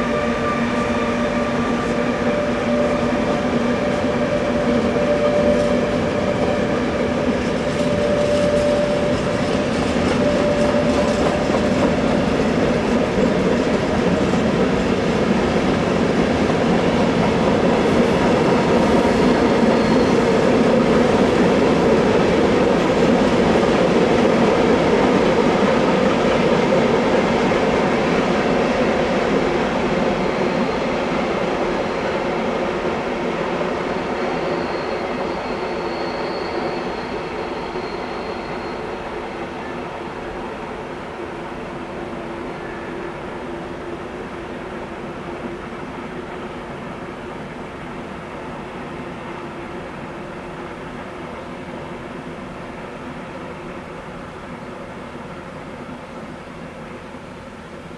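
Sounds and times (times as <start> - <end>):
train wheels rumbling on rail: 0.0 - 57.9
faint wheel squeal: 17.7 - 23.6, 33.9 - 39.8.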